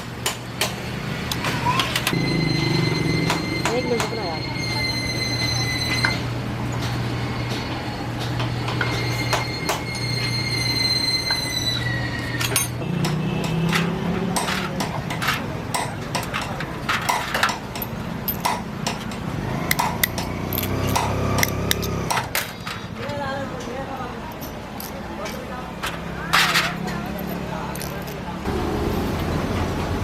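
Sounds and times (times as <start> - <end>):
metal tools clinking: 12.3 - 23.1, 24.2 - 28.4.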